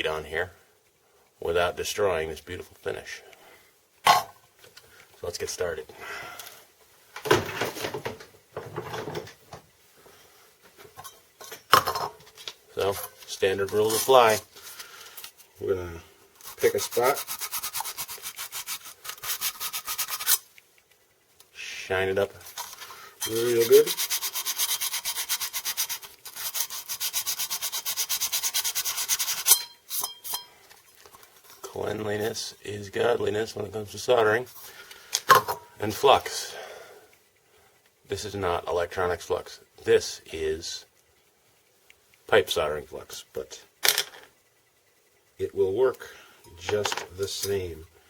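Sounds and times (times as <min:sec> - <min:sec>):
object set down knock: 0:04.0 - 0:04.4, 0:07.2 - 0:09.3, 0:46.8 - 0:47.1
abrasive scrubbing copper: 0:16.4 - 0:20.6, 0:22.4 - 0:30.6.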